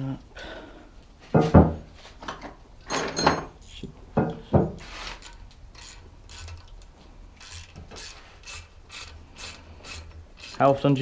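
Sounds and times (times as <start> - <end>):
ratchet spanner clicking: 5.2 - 10.7.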